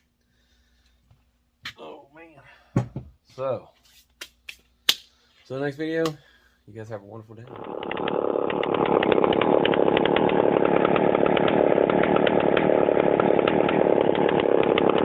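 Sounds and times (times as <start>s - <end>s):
chainsaw engine running: 7.5s - 15.0s.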